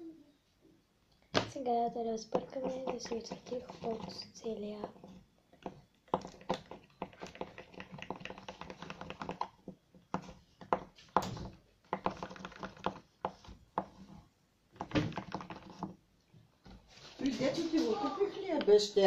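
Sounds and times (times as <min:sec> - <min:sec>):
stirrer tapping container: 0:02.2 - 0:14.2, 0:14.8 - 0:16.0.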